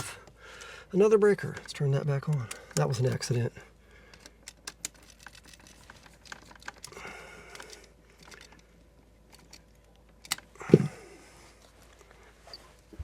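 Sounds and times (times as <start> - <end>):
hand tools clicking and tapping: 10.2 - 10.9
heavy low thump: 10.7 - 10.9.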